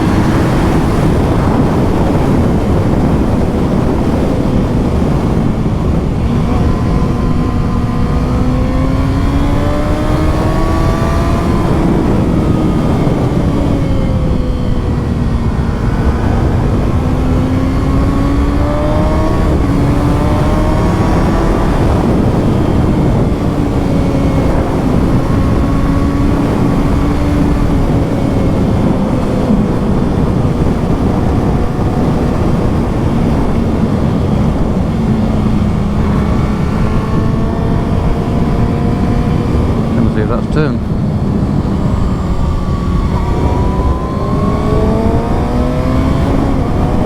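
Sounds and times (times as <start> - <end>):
motorcycle engine running: 0.0 - 47.0
low rushing noise: 13.8 - 19.6.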